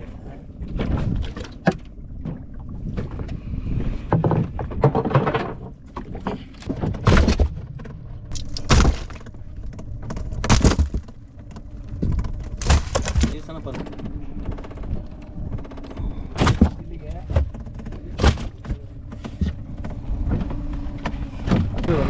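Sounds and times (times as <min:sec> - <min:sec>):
boat low rumble: 0:00.0 - 0:22.0
splashes against hull: 0:12.4 - 0:13.8.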